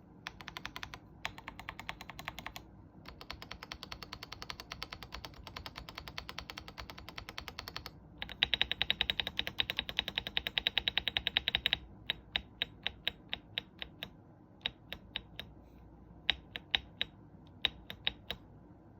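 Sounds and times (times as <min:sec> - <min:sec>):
mechanical keyboard typing: 0:00.2 - 0:15.5, 0:16.2 - 0:18.4.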